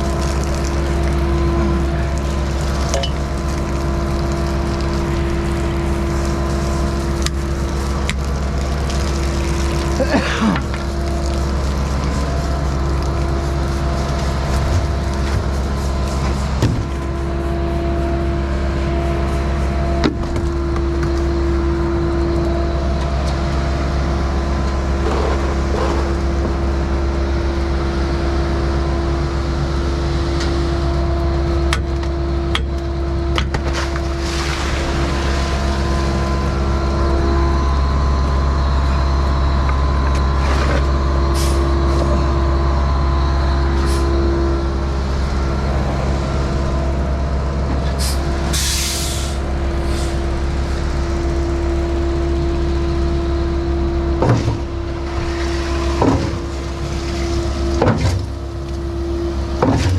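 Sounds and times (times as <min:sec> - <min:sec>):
diesel engine drone: 0:00.0 - 0:59.9
held machine whine: 0:34.8 - 0:59.9
air hiss burst: 0:48.0 - 0:50.1.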